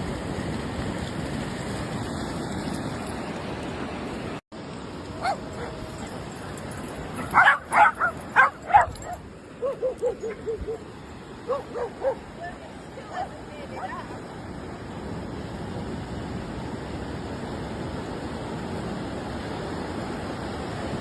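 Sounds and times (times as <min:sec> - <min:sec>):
surf rushing: 0:00.0 - 0:21.0
dog barking: 0:05.2 - 0:05.8, 0:07.2 - 0:10.9, 0:11.5 - 0:12.2
dog yipping: 0:05.2 - 0:06.2, 0:07.2 - 0:10.9, 0:11.5 - 0:12.2.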